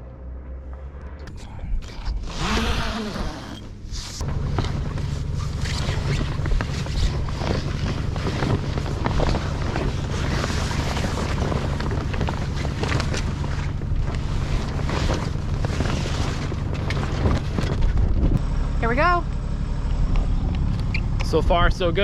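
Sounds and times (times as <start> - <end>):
boat engine idling: 3.8 - 22.0
wind buffeting the microphone: 6.1 - 18.4.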